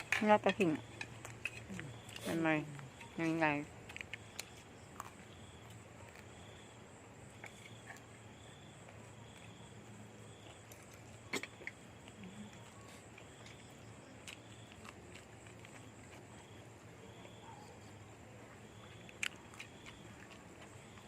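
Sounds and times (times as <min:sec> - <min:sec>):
faint low hum: 0:00.0 - 0:21.0.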